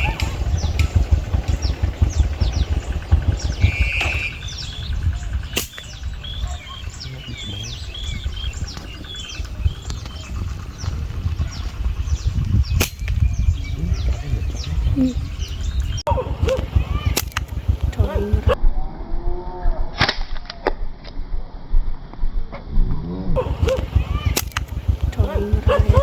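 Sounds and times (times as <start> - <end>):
sharp snaps: 0.0 - 6.4, 12.8 - 13.3, 16.4 - 18.6, 23.4 - 26.0
small birds chirping: 0.0 - 18.6, 23.4 - 26.0
low rumble: 0.0 - 26.0.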